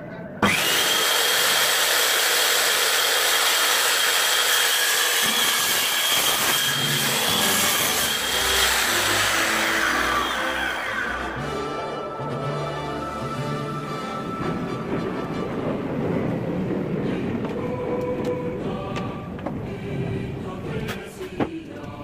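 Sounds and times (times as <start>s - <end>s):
circular saw whining: 0.4s - 14.9s
background music: 6.9s - 22.0s.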